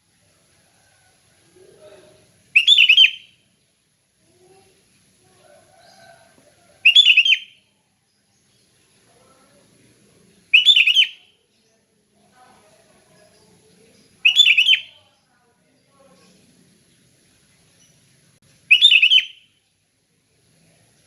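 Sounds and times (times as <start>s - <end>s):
bulbul singing: 2.5s - 3.4s, 6.8s - 7.6s, 10.5s - 11.4s, 13.2s - 15.1s, 18.7s - 19.6s.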